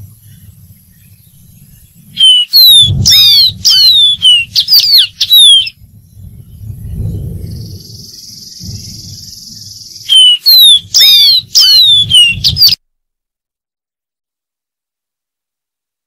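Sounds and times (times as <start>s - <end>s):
low rumble: 0.0s - 10.2s
bird whistled notes: 0.2s - 5.8s, 7.5s - 12.8s
bird buzzy trill: 9.2s - 12.8s.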